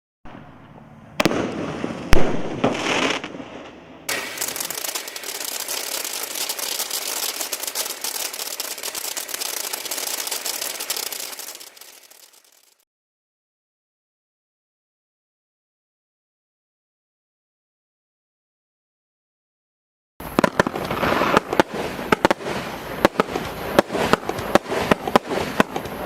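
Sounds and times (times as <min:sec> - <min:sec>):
firework bangs: 0:00.3 - 0:12.8, 0:20.2 - 0:26.0
firework crackling: 0:00.3 - 0:12.8, 0:20.2 - 0:26.0
firework hiss: 0:01.2 - 0:12.8, 0:20.2 - 0:26.0.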